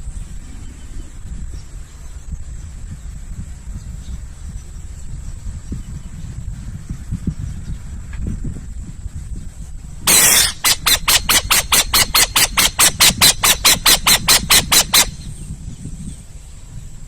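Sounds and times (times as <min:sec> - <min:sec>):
low rumble of wind: 0:00.0 - 0:17.0
owl screeching and rasping: 0:10.1 - 0:15.4.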